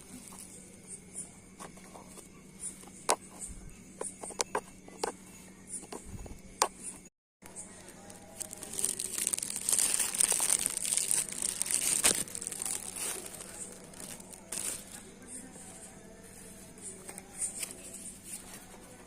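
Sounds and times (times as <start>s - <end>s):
packaging crinkling and tearing: 7.7s - 15.1s.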